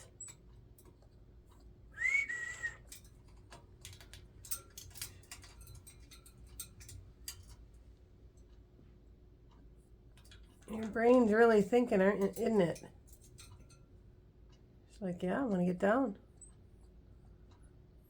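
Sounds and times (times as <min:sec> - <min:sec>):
parrot whistling: 0:02.0 - 0:02.8.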